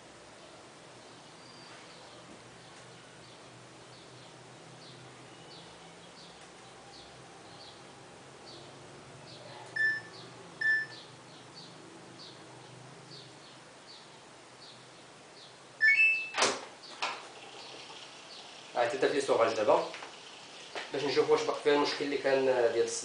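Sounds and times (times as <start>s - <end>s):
washing machine beeps: 9.8s - 11.0s, 15.8s - 16.4s.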